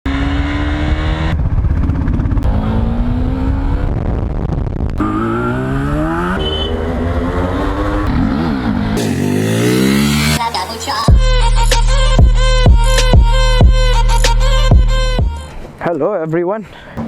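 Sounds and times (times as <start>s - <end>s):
motorcycle engines revving hard: 0.1s - 4.3s, 5.0s - 11.2s.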